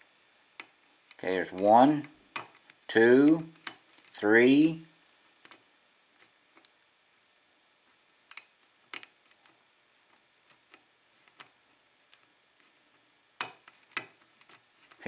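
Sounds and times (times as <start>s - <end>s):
lock pick clicks and ticks: 7.9s - 9.5s.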